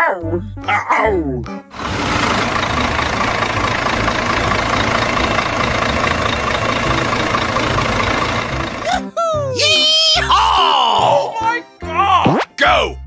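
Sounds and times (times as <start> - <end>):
engine running rough: 1.7 - 9.0.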